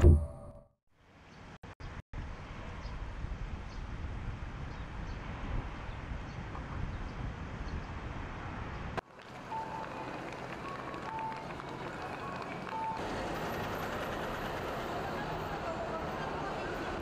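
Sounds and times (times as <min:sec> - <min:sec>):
wind buffeting microphone: 0:02.2 - 0:09.0.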